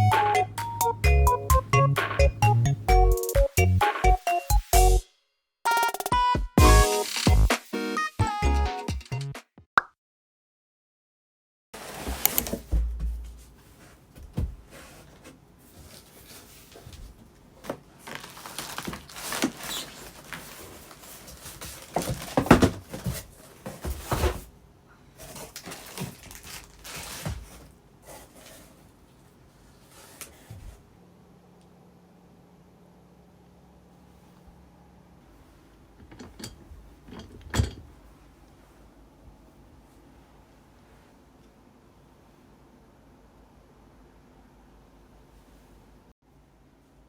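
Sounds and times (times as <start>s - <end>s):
objects being moved about: 11.8s - 24.5s, 25.2s - 28.8s.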